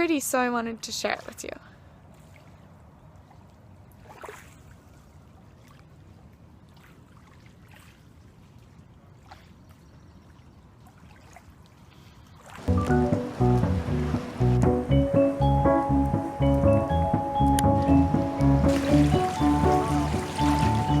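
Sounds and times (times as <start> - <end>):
background music: 12.7 - 21.0
low steady rumble: 12.7 - 21.0.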